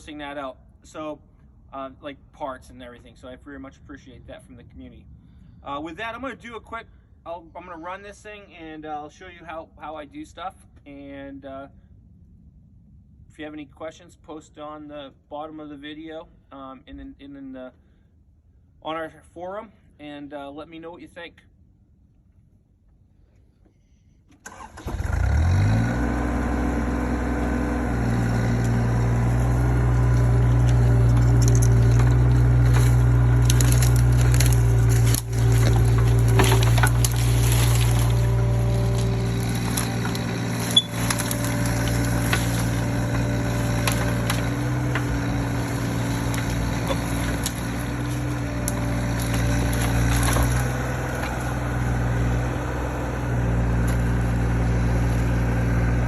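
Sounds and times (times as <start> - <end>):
excavator engine running: 24.5 - 56.0.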